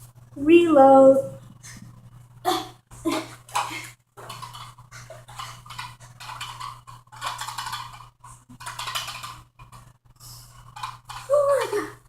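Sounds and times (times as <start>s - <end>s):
plastic toy blaster clattering: 3.5s - 9.8s, 10.6s - 11.4s.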